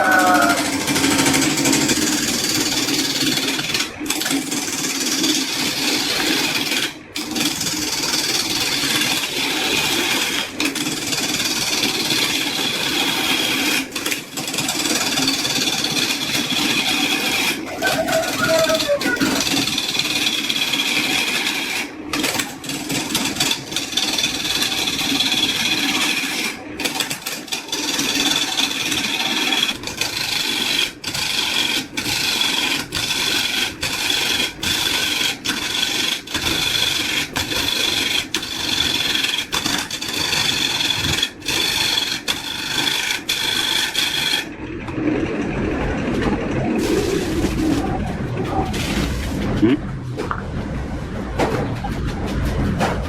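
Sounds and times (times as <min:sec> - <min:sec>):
rasp on wood strokes: 0:00.0 - 0:44.5
dull low sound: 0:44.5 - 0:53.0.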